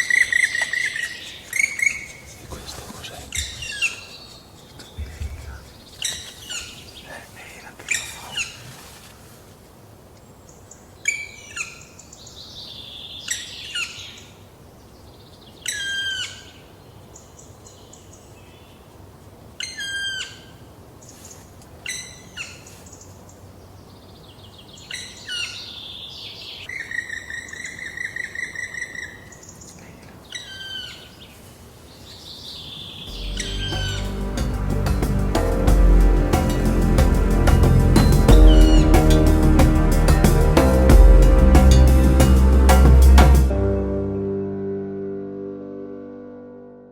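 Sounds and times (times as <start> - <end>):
buzzy bird calls: 0.0 - 8.9, 32.0 - 40.0
music: 33.1 - 46.9
bird calls sharply falling notes: 36.5 - 40.2.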